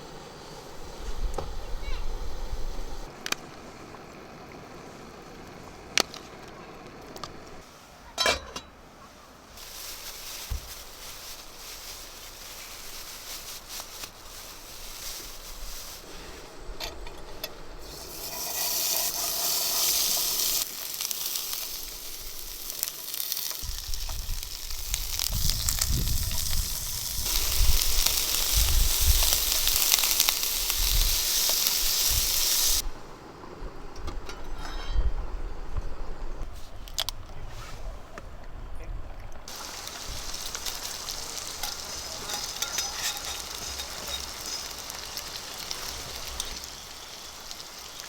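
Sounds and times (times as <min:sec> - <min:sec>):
beef sizzling: 0:09.5 - 0:16.8, 0:17.4 - 0:33.1, 0:39.5 - 0:48.0.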